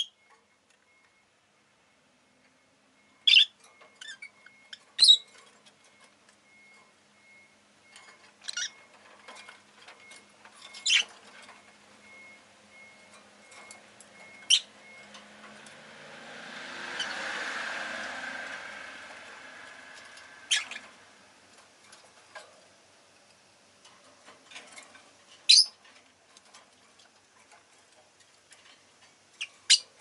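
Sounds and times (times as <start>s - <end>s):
lovebird chirping: 0.0s - 0.2s, 3.2s - 5.4s, 8.4s - 9.5s, 10.1s - 11.4s, 14.4s - 14.8s, 20.4s - 21.0s, 25.4s - 25.8s, 29.4s - 30.0s
passing traffic rush: 12.0s - 22.3s.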